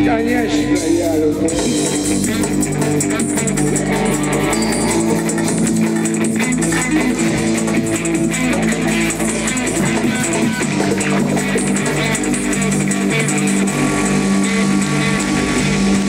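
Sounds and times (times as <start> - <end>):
bass guitar: 0.0 - 16.0
drum kit: 0.0 - 16.0
electric guitars: 0.0 - 16.0.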